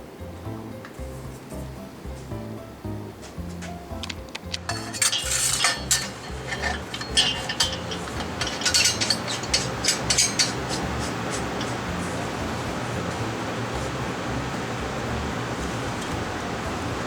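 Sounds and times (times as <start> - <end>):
metallic scrapes and clinks: 4.0 - 13.3.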